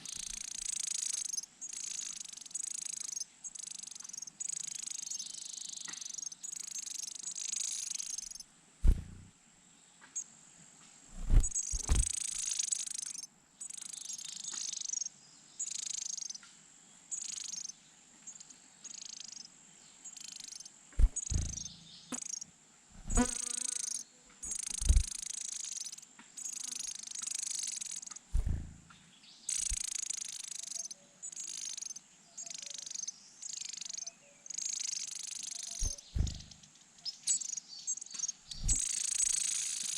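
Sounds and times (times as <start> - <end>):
sharp low thumps: 8.8 - 9.3, 11.1 - 12.1, 21.0 - 21.8, 23.0 - 23.4, 24.8 - 25.1, 28.4 - 28.9, 35.8 - 36.6, 38.5 - 38.8
nestlings begging calls: 29.5 - 30.2.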